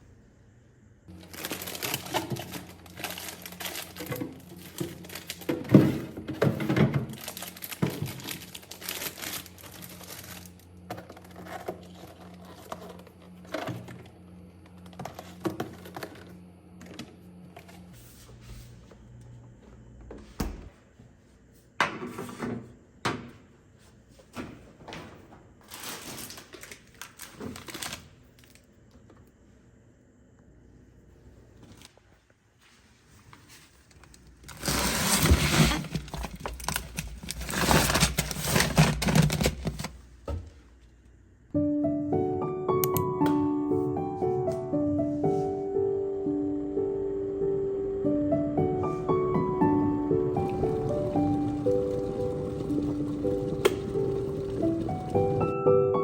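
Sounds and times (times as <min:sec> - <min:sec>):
packaging crinkling: 0:01.1 - 0:05.9, 0:07.0 - 0:13.4, 0:25.6 - 0:28.7, 0:33.9 - 0:40.0, 0:50.3 - 0:55.5
items clicking and knocking: 0:01.2 - 0:14.1, 0:33.9 - 0:40.5.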